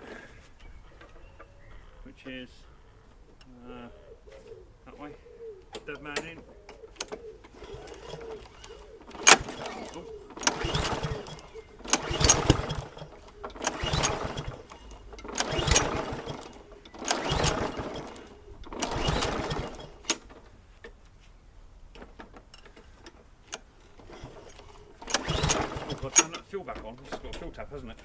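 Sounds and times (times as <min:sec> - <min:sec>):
lawnmower engine cranking: 0:05.7 - 0:20.7, 0:21.8 - 0:28.0.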